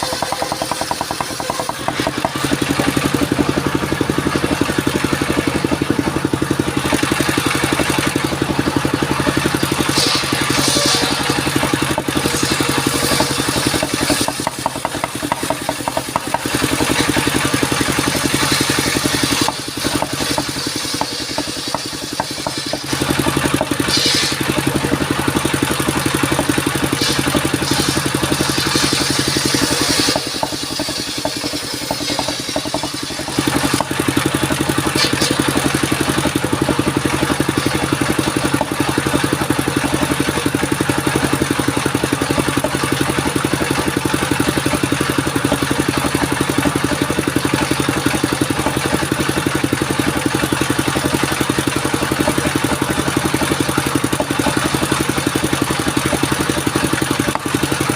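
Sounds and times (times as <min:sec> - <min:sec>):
circular saw engine running: 0:00.0 - 0:57.9.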